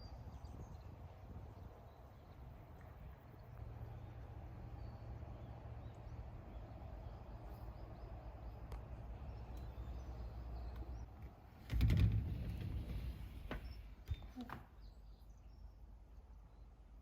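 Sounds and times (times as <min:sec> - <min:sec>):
low outdoor rumble: 0:00.0 - 0:17.0
faint bird chirps: 0:13.4 - 0:17.0.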